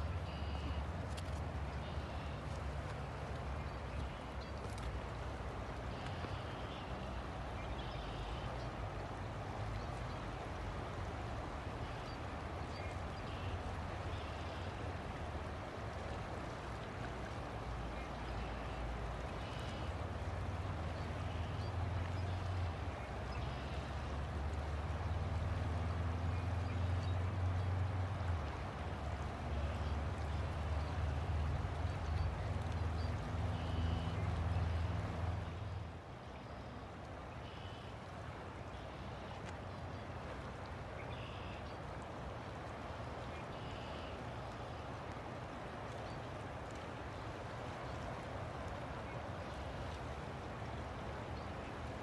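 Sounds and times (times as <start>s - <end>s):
river water flowing: 0.0s - 52.0s.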